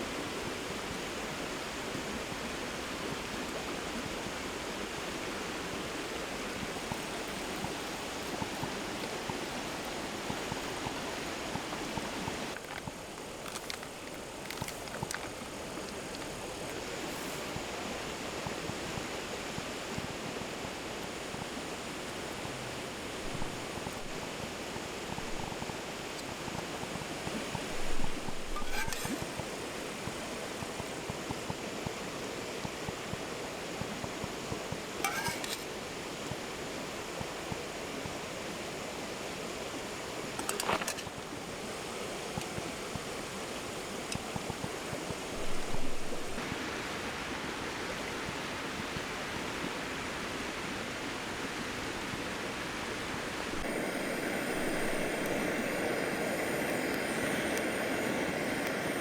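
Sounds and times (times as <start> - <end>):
steady rushing noise: 53.6 - 59.0.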